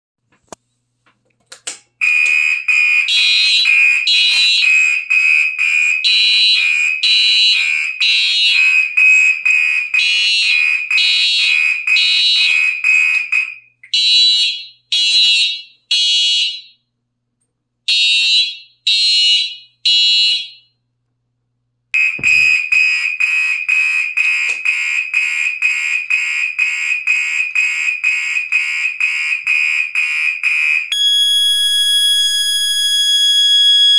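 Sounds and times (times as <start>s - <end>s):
higher-pitched alarm horn: 2.0s - 16.4s, 22.0s - 33.9s
fire alarm horn pulsing: 2.0s - 16.8s, 17.9s - 20.8s, 22.0s - 33.9s.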